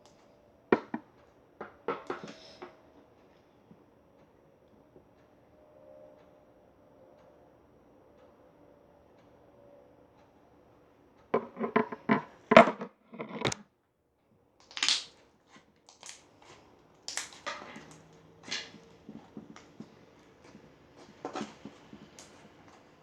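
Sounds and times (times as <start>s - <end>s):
slime crackling pops: 14.7s - 15.1s.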